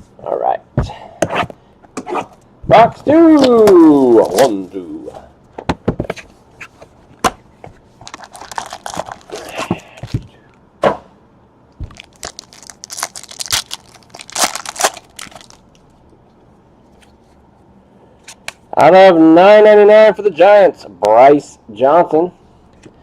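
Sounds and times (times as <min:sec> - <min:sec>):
packaging tearing and crinkling: 0:08.0 - 0:10.1, 0:11.9 - 0:15.8.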